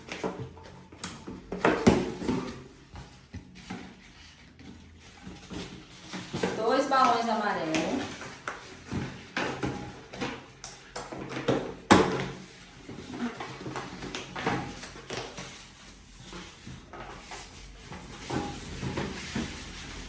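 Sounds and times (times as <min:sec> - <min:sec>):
balloons rubbing and knocking: 0:11.7 - 0:20.0.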